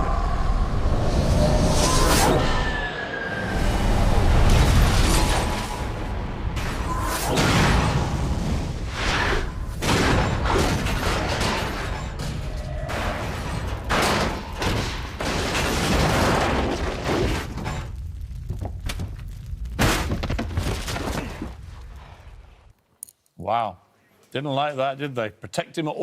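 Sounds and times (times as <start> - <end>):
debris shattering: 9.8 - 21.6.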